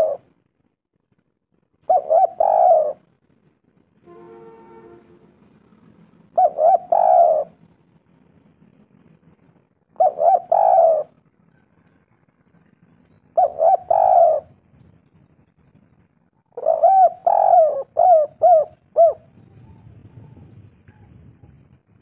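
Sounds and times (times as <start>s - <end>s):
dove cooing: 0.0s - 0.3s, 1.8s - 3.1s, 6.3s - 7.6s, 9.9s - 12.0s, 13.4s - 14.6s, 16.5s - 21.6s.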